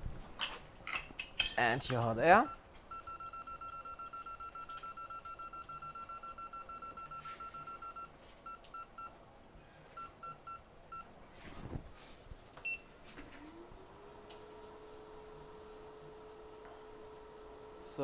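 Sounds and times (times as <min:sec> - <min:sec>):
electronic beeps: 0:02.4 - 0:09.1.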